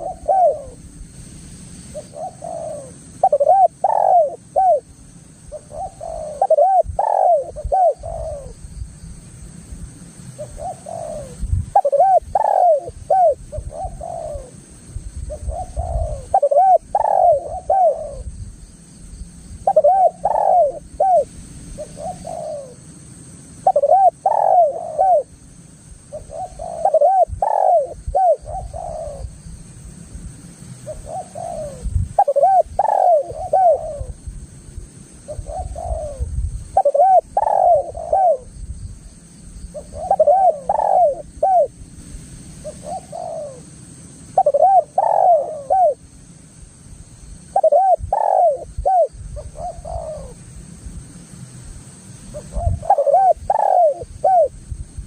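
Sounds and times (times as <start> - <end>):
dove cooing: 0.0 - 0.8, 1.9 - 8.6, 10.4 - 14.6, 15.2 - 18.3, 19.6 - 22.8, 23.6 - 25.4, 26.1 - 29.3, 30.8 - 34.2, 35.2 - 38.6, 39.7 - 41.8, 42.6 - 43.7, 44.3 - 46.1, 47.5 - 50.4, 52.3 - 54.6.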